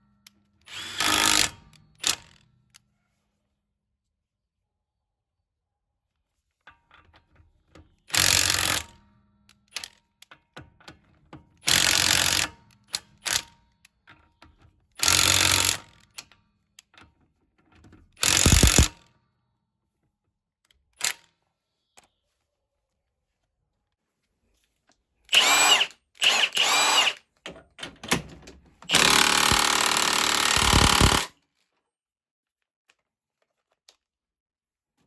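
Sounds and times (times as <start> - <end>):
impact wrench rattling: 18.2 - 18.9, 25.3 - 27.2, 28.8 - 31.3
small clicks: 18.2 - 18.9, 28.9 - 31.3.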